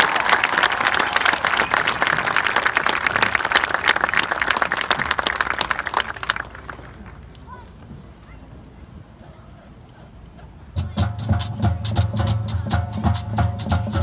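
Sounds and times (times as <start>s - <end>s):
crowd applauding: 0.0s - 7.3s.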